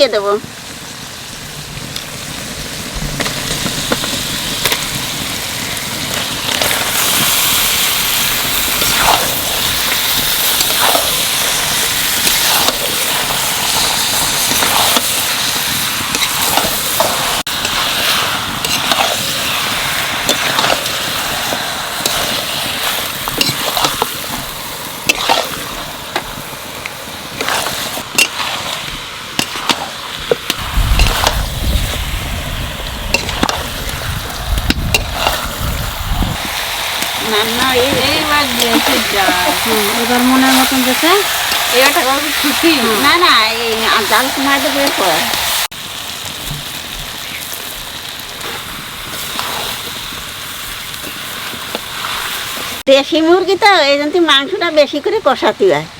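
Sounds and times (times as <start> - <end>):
meat sizzling in oil: 0.0 - 55.7
spatula scraping a pan: 6.1 - 26.5, 27.3 - 31.5, 34.6 - 35.8, 36.4 - 45.7, 48.4 - 50.0.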